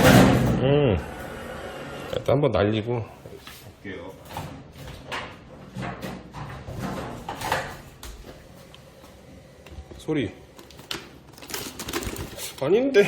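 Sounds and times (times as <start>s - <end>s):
cardboard boxes shaken: 11.4s - 12.6s.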